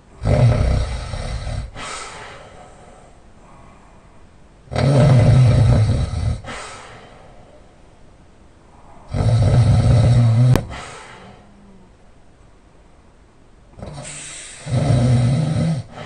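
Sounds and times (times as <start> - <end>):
loud open-mouth snoring: 0.2 - 1.8, 4.7 - 6.5, 9.0 - 10.8, 13.8 - 16.0
soft breath: 1.6 - 4.4, 6.4 - 7.9, 8.6 - 9.2, 10.5 - 12.0, 14.0 - 14.8.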